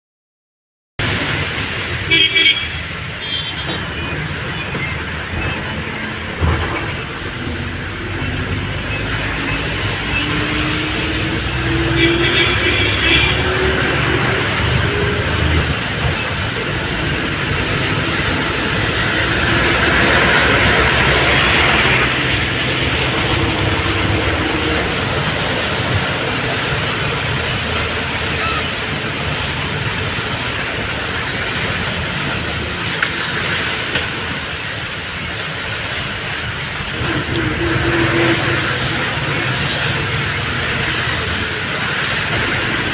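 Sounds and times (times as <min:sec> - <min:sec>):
bus engine and road noise: 0:01.0 - 0:42.9.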